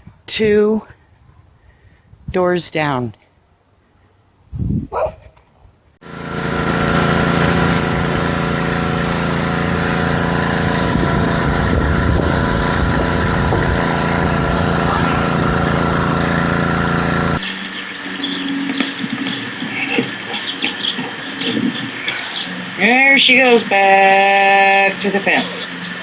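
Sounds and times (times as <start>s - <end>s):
motor humming: 6.0s - 26.0s.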